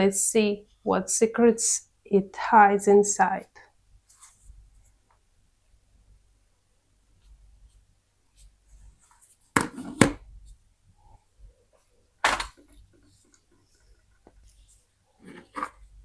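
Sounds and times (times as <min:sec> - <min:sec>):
phone scraping on hard surface: 0:15.2 - 0:15.8.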